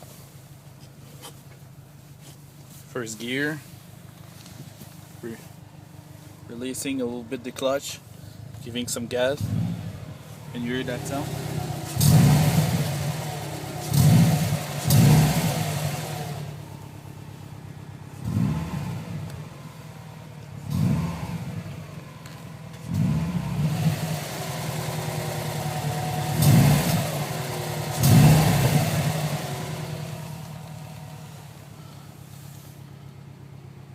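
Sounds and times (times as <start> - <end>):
rough noise from underneath car: 0.0 - 33.9
car engine surging: 8.1 - 33.0.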